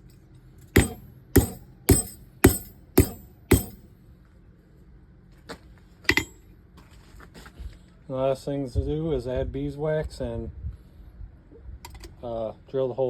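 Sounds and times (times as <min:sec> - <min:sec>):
hammer striking steel on anvil: 0:00.8 - 0:03.8, 0:06.1 - 0:06.4.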